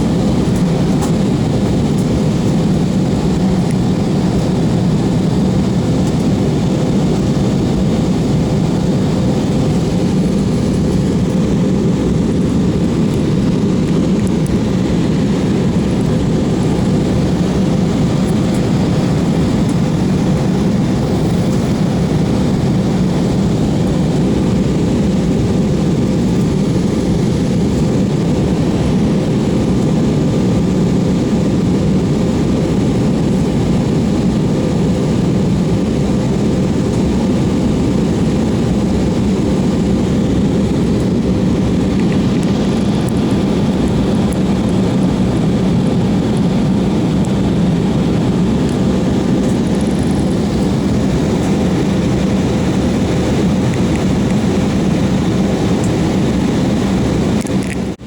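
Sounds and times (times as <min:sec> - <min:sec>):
airliner cabin engine and airflow noise: 0:00.0 - 0:58.0.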